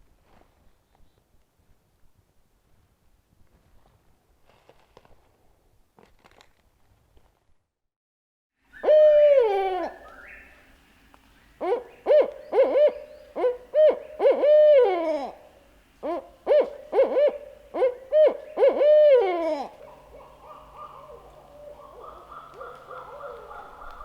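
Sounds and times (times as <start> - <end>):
owl hooting: 8.8 - 10.6, 11.6 - 24.0.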